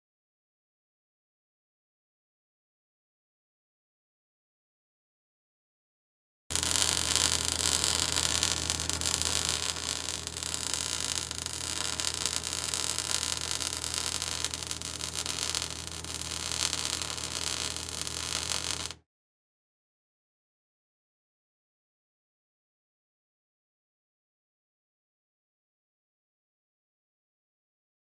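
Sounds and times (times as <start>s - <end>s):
low electrical hum: 6.5s - 19.0s
steady hiss: 6.5s - 19.0s.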